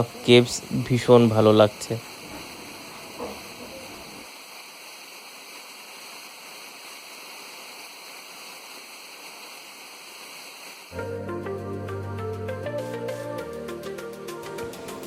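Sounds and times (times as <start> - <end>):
background music: 11.0 - 15.0.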